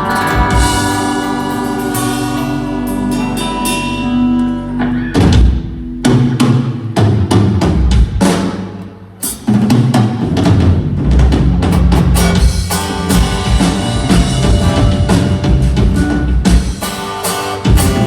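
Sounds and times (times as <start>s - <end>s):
drum kit hits: 0.0s - 4.0s, 4.8s - 18.0s
low sustained bass notes: 0.0s - 6.1s
rock band playing loud: 0.0s - 18.0s.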